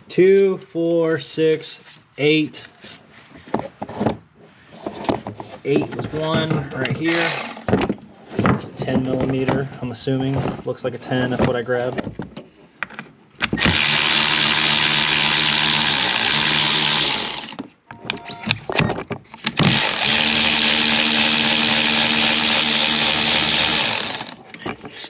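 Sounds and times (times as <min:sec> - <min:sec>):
power driver spinning screws: 0:07.1 - 0:07.8, 0:13.6 - 0:17.7, 0:19.5 - 0:25.0
tool and parts clicking: 0:07.1 - 0:07.9, 0:13.4 - 0:25.0.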